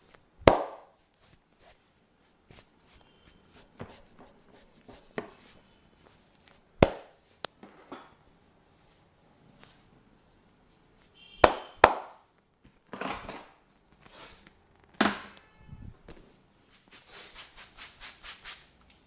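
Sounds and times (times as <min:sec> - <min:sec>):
hands smacking body: 0:00.4 - 0:00.9, 0:06.5 - 0:07.2, 0:11.4 - 0:12.2.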